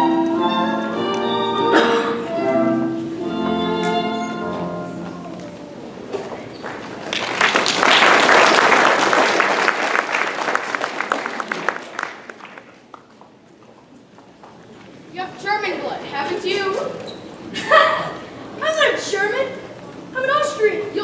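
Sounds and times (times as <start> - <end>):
held musical chord: 0.0 - 5.5
audience applause: 6.6 - 13.4.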